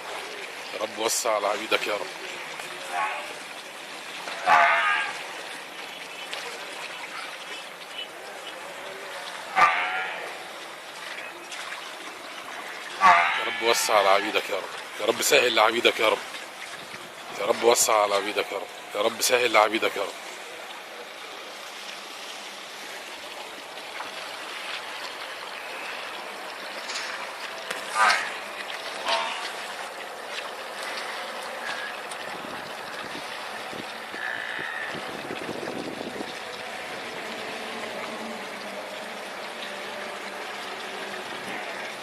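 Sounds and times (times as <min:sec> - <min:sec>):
water rushing: 0:00.0 - 0:42.0
farm animal bleating: 0:04.4 - 0:05.2, 0:09.6 - 0:10.4, 0:13.0 - 0:14.3.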